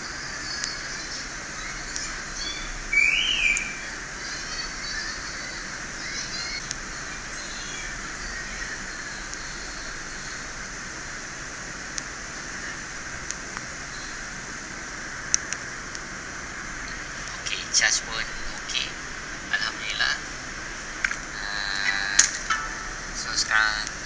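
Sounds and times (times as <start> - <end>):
background hiss: 0.0 - 24.0
faint clicks: 0.5 - 1.3, 1.9 - 2.2, 3.5 - 3.8, 5.7 - 7.3, 8.0 - 14.4, 18.5 - 22.9.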